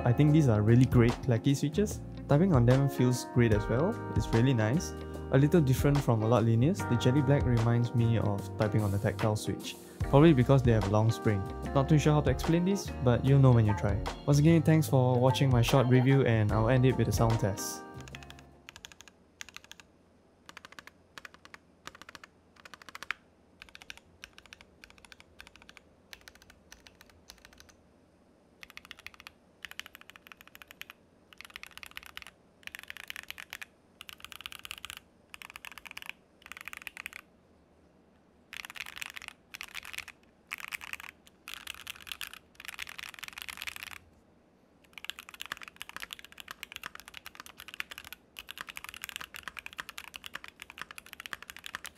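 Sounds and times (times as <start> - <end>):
clacky mechanical keyboard typing: 18.0 - 19.9, 20.5 - 27.8, 28.6 - 37.2, 38.5 - 44.0, 44.9 - 51.9.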